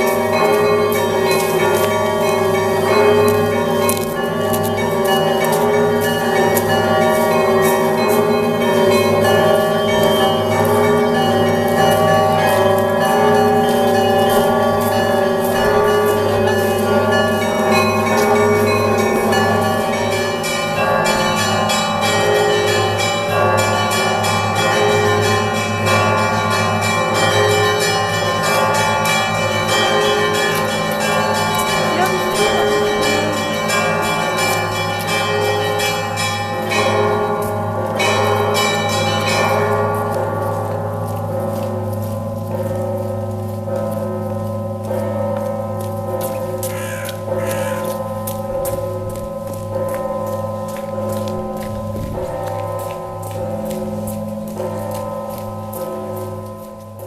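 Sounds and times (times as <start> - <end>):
deep bells humming: 0.0 - 57.0
small bells ringing: 0.0 - 57.0.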